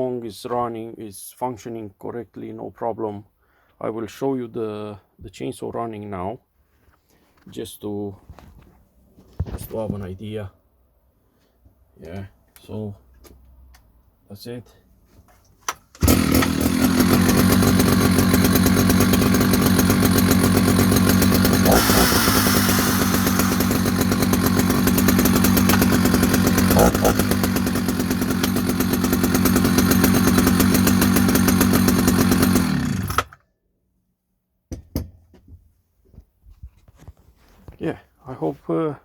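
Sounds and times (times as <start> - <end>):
chainsaw running: 16.0 - 33.4.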